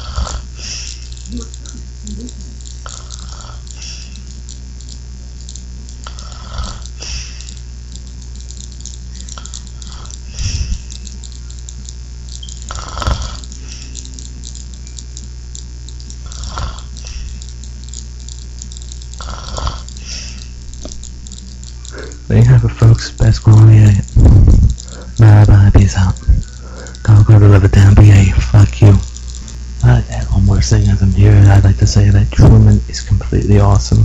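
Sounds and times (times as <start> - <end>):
man snoring: 0.0 - 1.8, 2.8 - 4.2, 6.0 - 7.4, 9.4 - 10.8, 12.7 - 13.5, 16.2 - 17.4, 19.2 - 20.4
steady low hum: 0.0 - 34.0.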